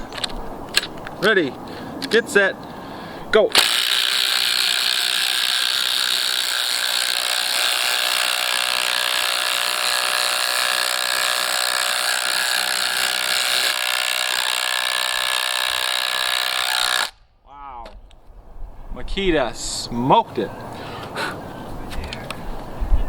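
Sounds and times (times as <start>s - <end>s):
impact drivers hammering: 3.5s - 17.2s.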